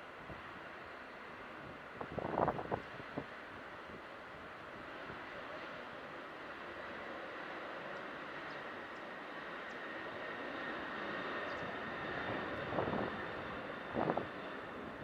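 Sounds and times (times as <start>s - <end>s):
wind noise on microphone: 2.0s - 3.2s.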